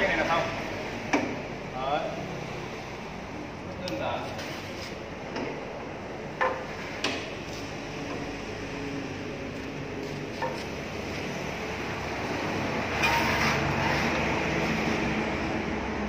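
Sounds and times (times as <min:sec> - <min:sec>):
workshop background noise: 0:00.0 - 0:16.0
metallic knocks and clunks: 0:06.4 - 0:07.4.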